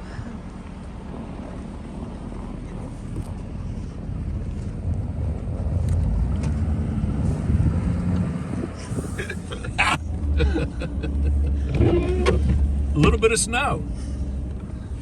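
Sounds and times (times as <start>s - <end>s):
truck engine and tyre rumble: 0.0s - 15.0s
wind buffeting microphone: 1.0s - 10.4s.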